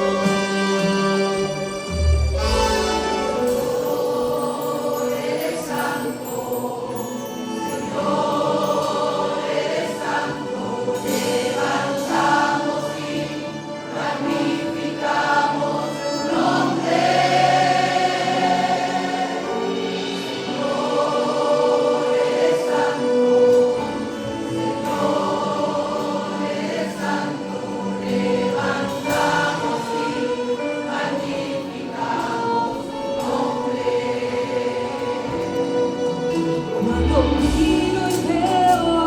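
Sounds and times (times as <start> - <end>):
choir singing: 0.0 - 39.0.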